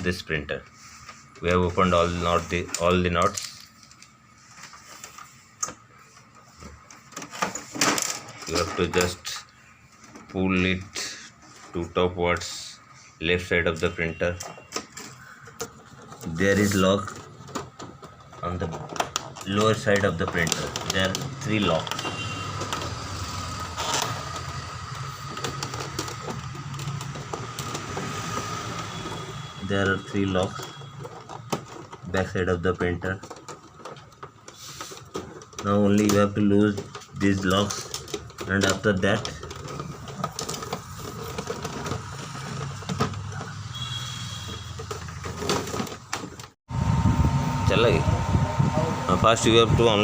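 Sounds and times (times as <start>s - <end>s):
steady low hum: 46.7s - 50.0s.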